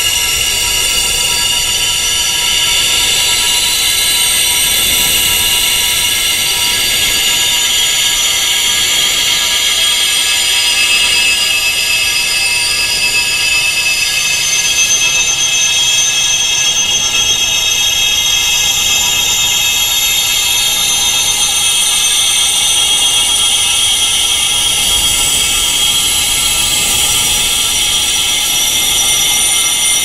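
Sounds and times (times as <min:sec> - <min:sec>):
high-pitched wind chimes ringing: 0:18.4 - 0:30.0.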